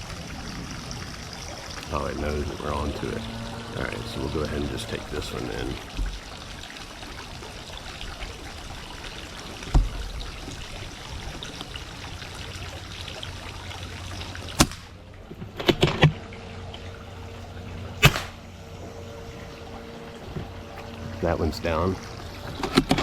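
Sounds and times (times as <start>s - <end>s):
air rifle crack: 18.0s - 18.4s.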